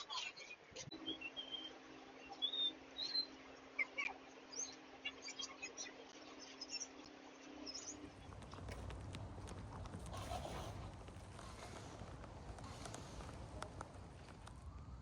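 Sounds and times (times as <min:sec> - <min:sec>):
faint steady hum: 0:00.0 - 0:15.0
birds chirping: 0:07.6 - 0:15.0.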